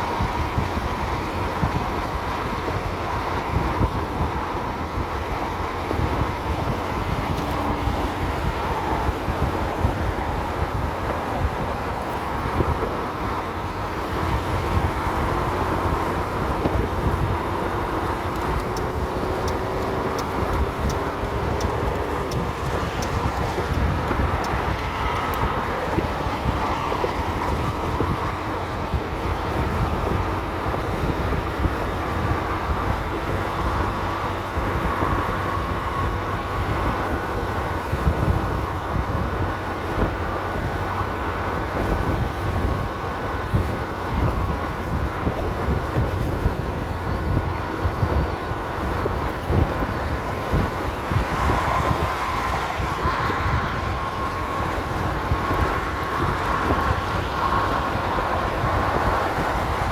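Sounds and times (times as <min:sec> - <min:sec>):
scooter engine and road drone: 0:00.0 - 0:59.9
wind buffeting microphone: 0:00.0 - 0:59.9.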